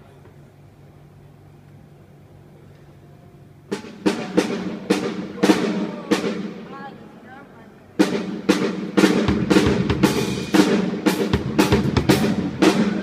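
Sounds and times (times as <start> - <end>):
drum hits ringing in a hall: 3.6 - 7.2, 7.9 - 13.0.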